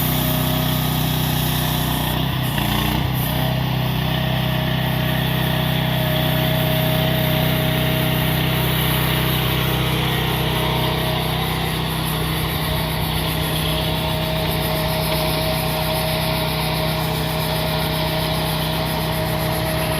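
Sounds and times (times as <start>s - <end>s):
small engine running: 0.0s - 19.9s
thin steady whine: 6.2s - 19.9s.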